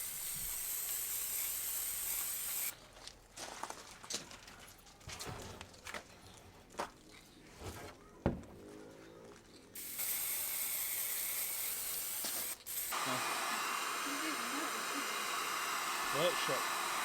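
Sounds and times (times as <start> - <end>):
aerosol can spraying: 0.0 - 2.7, 9.8 - 17.0.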